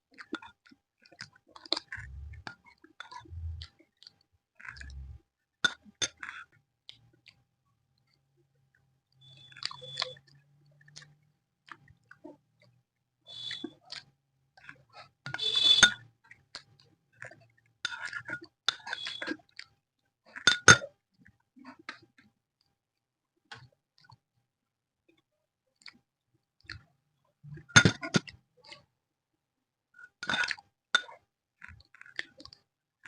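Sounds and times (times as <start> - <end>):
person chewing: 1.1 - 5.2.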